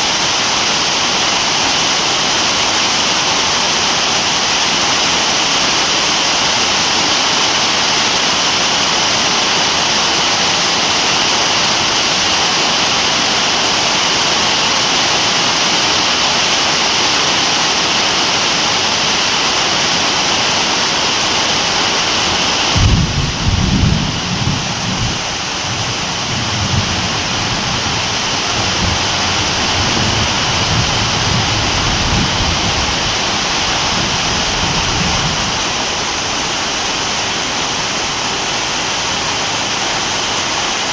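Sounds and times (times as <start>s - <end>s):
heavy rain: 0.0s - 40.9s
rolling thunder: 22.7s - 37.4s.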